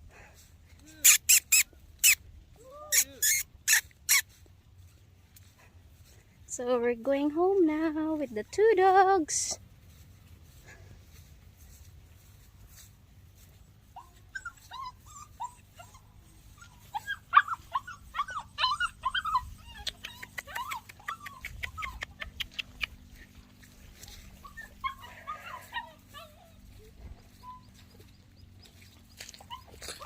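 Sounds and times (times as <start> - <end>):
dogs whining and yipping: 1.0 - 4.4, 12.7 - 30.0.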